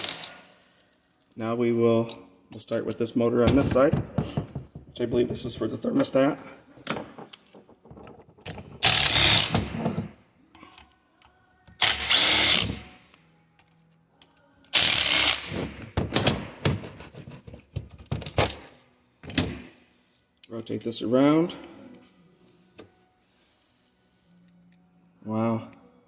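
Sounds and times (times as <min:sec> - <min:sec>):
power drill running: 0:08.8 - 0:09.6, 0:11.8 - 0:12.7, 0:14.8 - 0:15.5.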